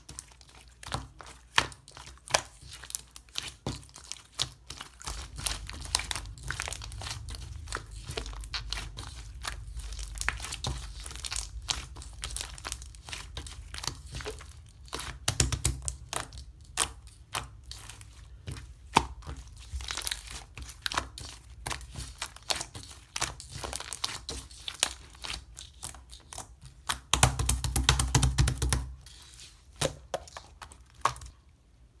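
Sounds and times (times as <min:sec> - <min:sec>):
slime crackling and popping: 0:00.0 - 0:31.4
low rumbling handling noise: 0:05.0 - 0:15.0.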